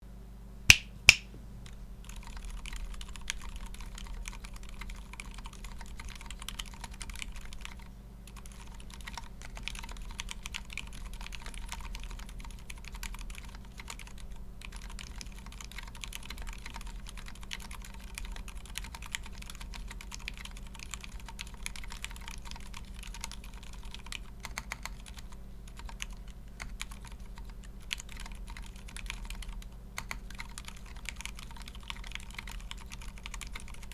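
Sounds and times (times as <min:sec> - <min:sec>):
sharp loud click: 0:00.7 - 0:01.3
quiet damped keyboard typing: 0:00.7 - 0:33.9.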